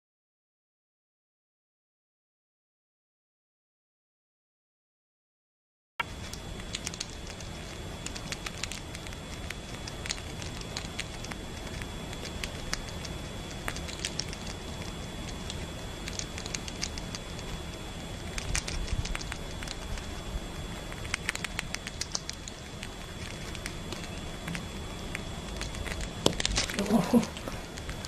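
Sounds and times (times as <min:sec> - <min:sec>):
crackling and clicking: 0:06.0 - 0:28.0
faint high whine: 0:06.0 - 0:28.0
steady low hiss: 0:06.0 - 0:28.0.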